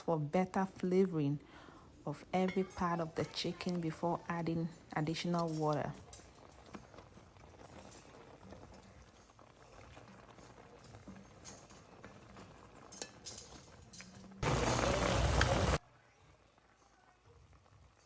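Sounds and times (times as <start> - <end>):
kitchenware clinking: 2.2 - 15.8.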